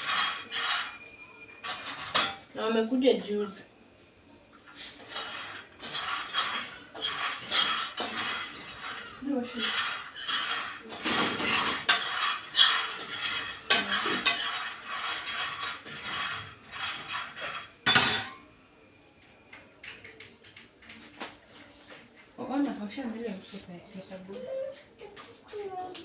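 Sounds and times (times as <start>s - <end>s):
dishes and cutlery clattering: 17.9s - 18.4s.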